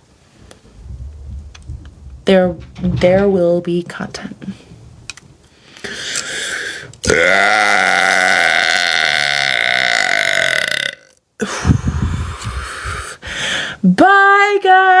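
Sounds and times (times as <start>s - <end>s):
short rough sound: 0.4s - 3.3s
woman burping: 7.0s - 12.6s.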